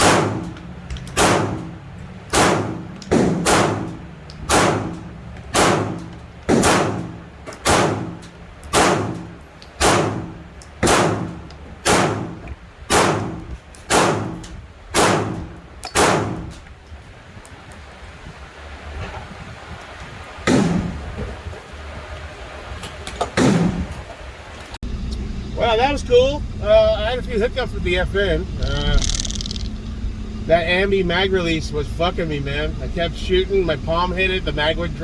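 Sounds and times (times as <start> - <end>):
gunshots with echo: 0.0 - 0.6, 1.2 - 14.4, 15.0 - 16.5.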